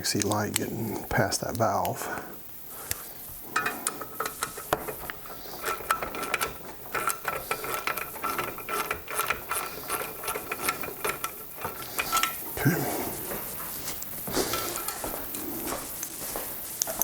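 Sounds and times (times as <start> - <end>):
socket ratchet clicking: 2.9 - 12.5.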